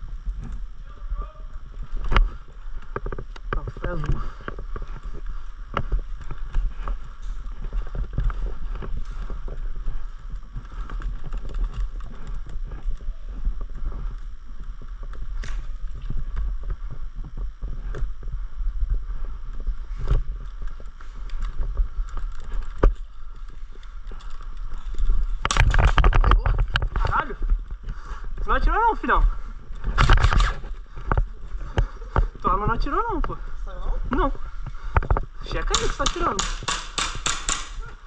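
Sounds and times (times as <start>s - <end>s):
footsteps: 0.0s - 38.0s
rustle of gear: 1.6s - 33.3s
sharp knocks or snaps: 35.7s - 37.8s.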